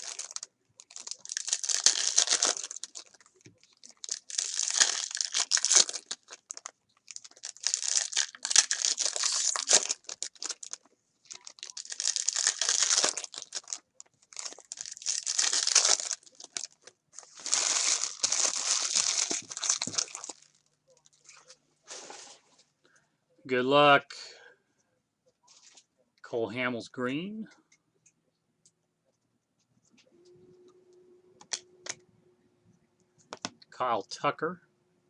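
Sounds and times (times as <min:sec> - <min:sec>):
card pack wrappers crinkling and tearing: 0:00.0 - 0:21.4.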